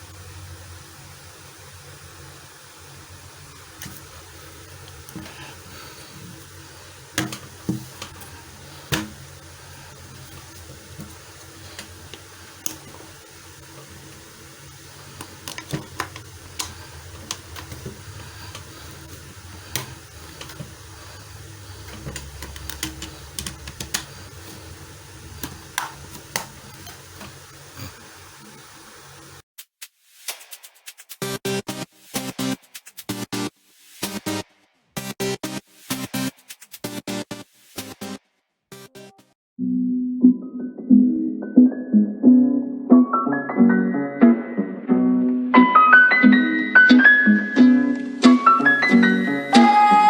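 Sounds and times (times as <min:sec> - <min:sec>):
steady low hum: 0:00.0 - 0:29.4
packaging being handled: 0:15.0 - 0:27.4.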